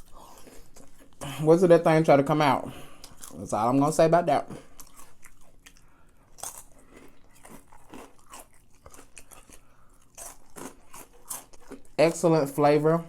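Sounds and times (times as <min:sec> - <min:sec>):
chewing crunchy food: 0:00.0 - 0:01.4, 0:02.9 - 0:03.6, 0:04.5 - 0:12.6.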